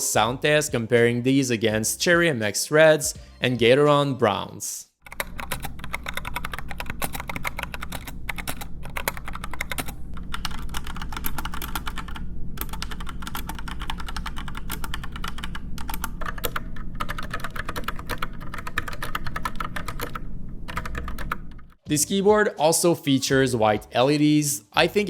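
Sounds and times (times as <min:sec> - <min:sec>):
fast typing on mechanical keyboard: 0:05.0 - 0:21.8.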